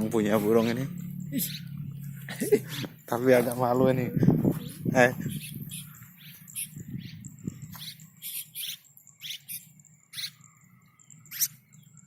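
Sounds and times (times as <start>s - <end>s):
bird giving harsh chirps: 0.4s - 3.2s, 4.0s - 10.5s.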